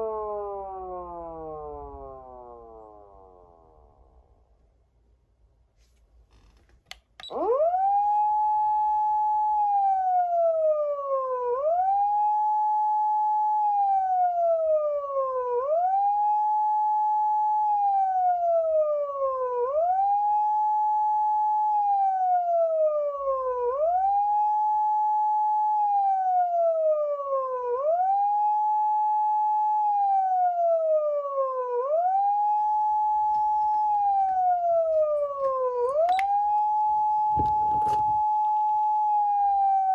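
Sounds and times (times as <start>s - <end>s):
electronic siren wailing: 0.0s - 3.9s, 7.2s - 10.1s, 29.9s - 39.9s.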